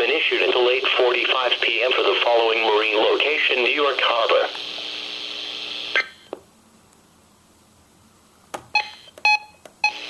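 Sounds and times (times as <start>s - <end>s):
short electronic beeps: 8.8s - 10.0s.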